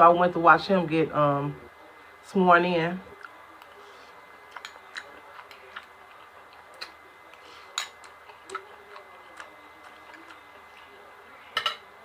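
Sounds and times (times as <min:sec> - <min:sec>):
chewing clicks and smacks: 0:03.2 - 0:03.8, 0:04.5 - 0:10.9.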